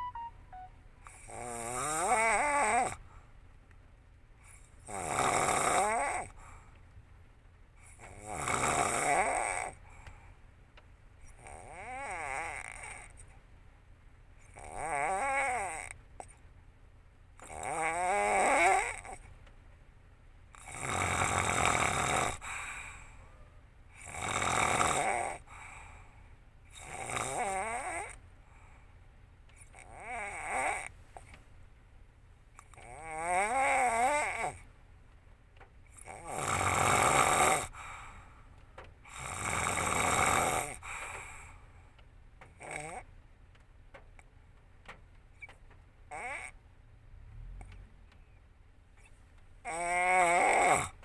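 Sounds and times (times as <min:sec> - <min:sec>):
woman snoring: 0:04.9 - 0:06.3, 0:08.2 - 0:09.8, 0:11.4 - 0:13.1, 0:14.6 - 0:15.9, 0:17.4 - 0:19.2, 0:20.6 - 0:22.7, 0:24.0 - 0:25.5, 0:26.8 - 0:28.2, 0:29.7 - 0:30.9, 0:32.8 - 0:34.6, 0:36.0 - 0:37.8, 0:39.1 - 0:41.1, 0:49.7 - 0:51.0
vehicle rumble: 0:46.6 - 0:49.7.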